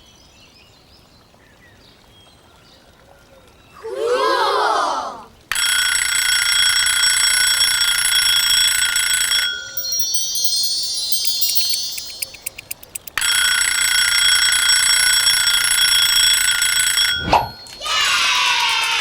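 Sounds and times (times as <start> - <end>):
alarm clock ringing: 5.5 - 17.8
quick run of clicks: 11.3 - 13.3
high whirring glide: 17.1 - 17.6.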